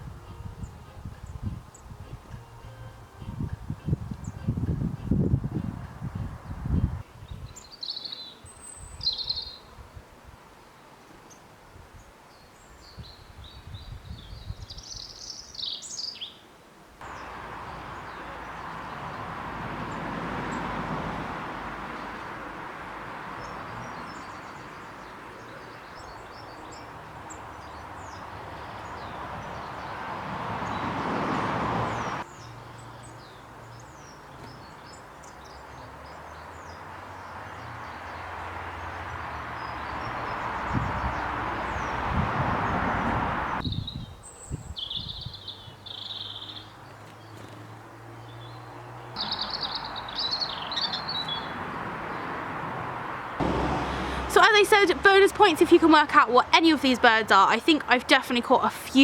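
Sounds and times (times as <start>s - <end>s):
small birds chirping: 6.4s - 9.7s, 12.0s - 16.4s, 23.3s - 52.4s
rushing noise: 51.1s - 55.1s.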